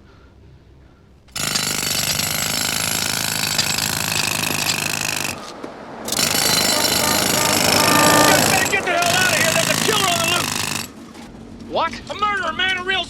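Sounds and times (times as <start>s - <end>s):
jackhammer pounding: 1.3s - 11.3s.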